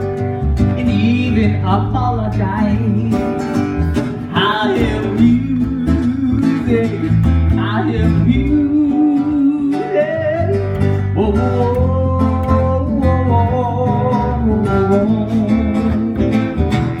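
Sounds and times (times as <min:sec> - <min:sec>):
bass line: 0:00.0 - 0:17.0
strummed acoustic guitar: 0:00.0 - 0:17.0.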